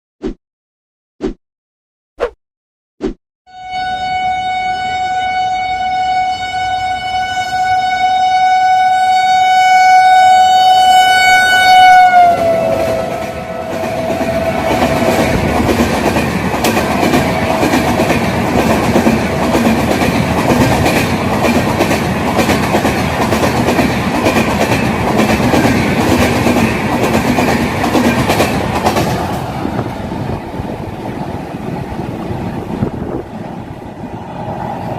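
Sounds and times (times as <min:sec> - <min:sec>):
train horn long blast: 0:03.5 - 0:15.5
train rumble and wheel clatter: 0:11.9 - 0:34.9.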